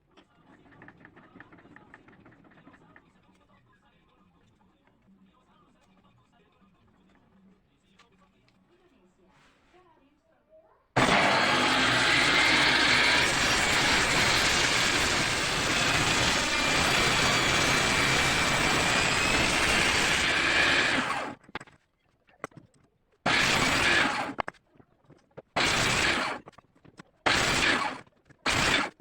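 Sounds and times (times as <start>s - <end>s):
power tool cutting wood: 11.0s - 21.4s, 23.3s - 24.4s, 25.6s - 26.5s, 27.3s - 29.0s.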